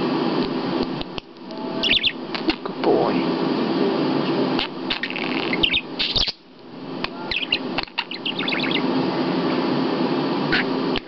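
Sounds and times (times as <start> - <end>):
low background hum: 0.0 - 11.0
budgerigar chirping: 1.8 - 2.6, 4.6 - 6.4, 7.2 - 8.9.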